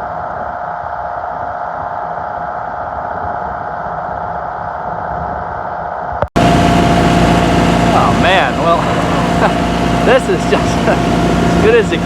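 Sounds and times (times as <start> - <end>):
boat engine humming: 6.4 - 12.0
water wash: 6.4 - 12.0.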